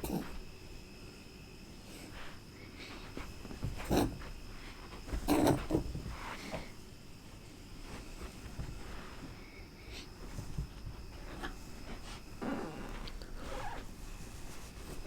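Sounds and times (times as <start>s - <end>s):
rabbit grunting: 5.1s - 6.6s.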